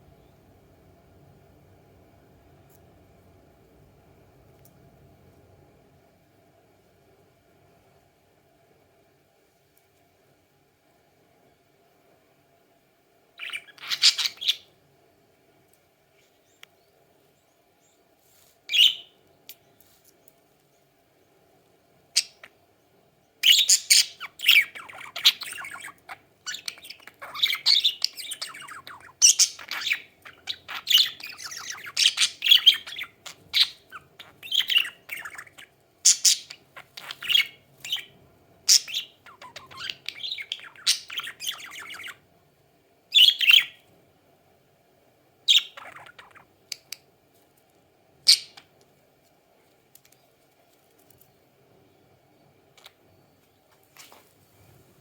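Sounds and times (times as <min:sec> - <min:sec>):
budgies chirping and warbling: 0:13.4 - 0:14.7, 0:18.7 - 0:19.0, 0:23.4 - 0:42.2, 0:43.1 - 0:43.8, 0:45.5 - 0:46.5.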